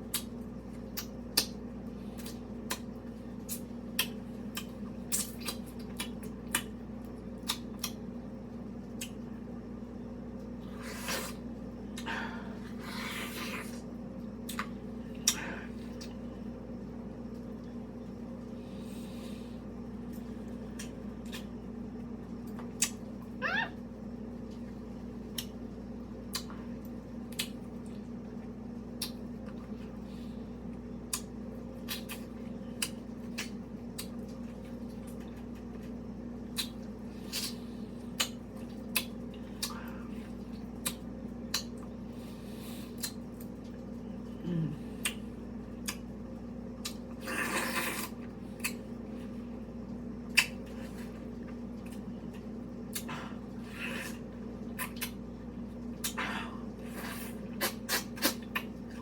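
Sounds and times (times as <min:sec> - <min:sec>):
wet eating mouth sounds: 0:00.0 - 0:08.0, 0:20.1 - 0:21.6, 0:26.2 - 0:49.4, 0:50.2 - 0:59.0
steady low hum: 0:00.0 - 0:59.0.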